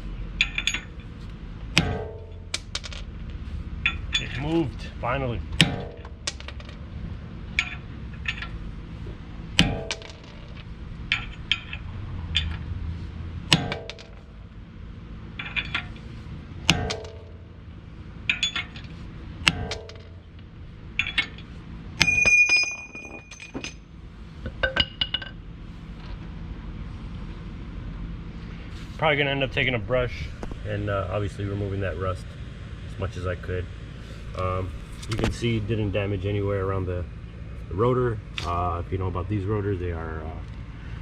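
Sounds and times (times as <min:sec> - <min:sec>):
metal clinking: 0:00.4 - 0:03.2, 0:03.8 - 0:04.7, 0:07.5 - 0:08.7, 0:09.6 - 0:12.7, 0:13.5 - 0:14.5, 0:15.3 - 0:17.6, 0:18.2 - 0:25.4
high metallic ring: 0:22.0 - 0:23.9.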